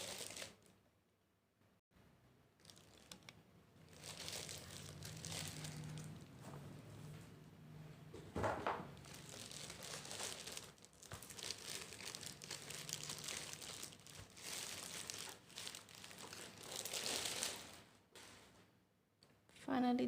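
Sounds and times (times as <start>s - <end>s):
packaging wrapper crinkling: 0.0s - 0.7s, 2.6s - 6.3s, 9.0s - 17.8s.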